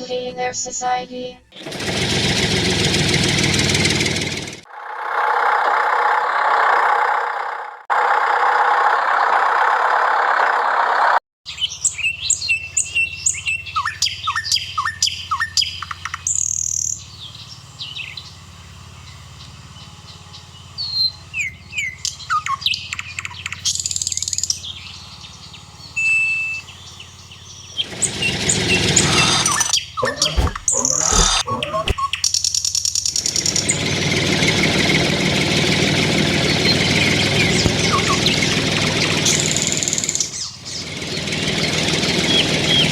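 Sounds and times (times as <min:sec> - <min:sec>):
small birds chirping: 0:11.5 - 0:32.8
steady low hum: 0:29.4 - 0:32.0.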